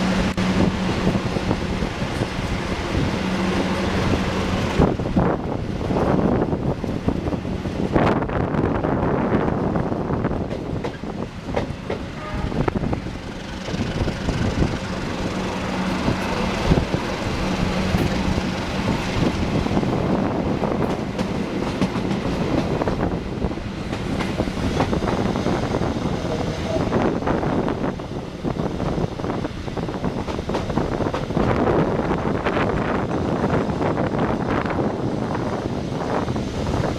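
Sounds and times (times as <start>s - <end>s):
train rumble: 0.0s - 36.9s
train wheels clicking over rail joints: 10.4s - 27.9s, 28.5s - 31.7s.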